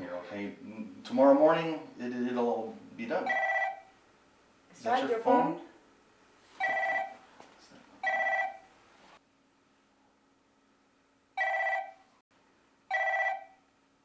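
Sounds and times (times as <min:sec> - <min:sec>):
phone ringtone beeps: 0:03.3 - 0:03.9, 0:06.6 - 0:07.2, 0:08.0 - 0:08.6, 0:11.4 - 0:12.1, 0:12.9 - 0:13.6.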